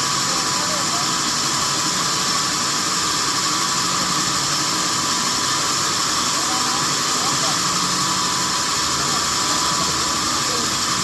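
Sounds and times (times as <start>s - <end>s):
sawmill machinery hissing: 0.0s - 11.0s.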